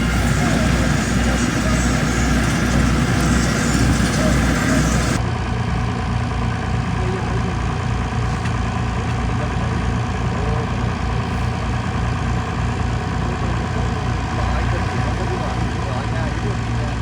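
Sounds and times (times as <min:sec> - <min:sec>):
farm machinery engine humming: 0:00.0 - 0:17.0.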